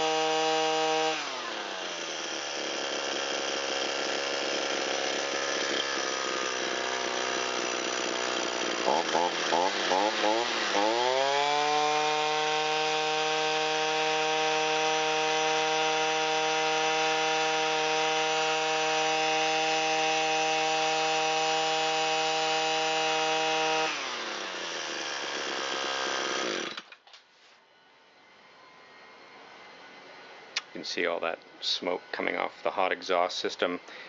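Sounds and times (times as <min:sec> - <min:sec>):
string trimmer engine revving: 0:00.0 - 0:26.9.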